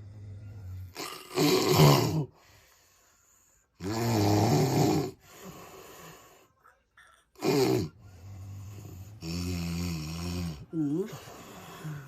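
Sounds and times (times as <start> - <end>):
person snoring loudly: 0.0 - 2.4, 3.8 - 5.2, 7.4 - 12.0
drawn-out breath: 2.3 - 3.8, 5.2 - 6.6, 10.8 - 12.0.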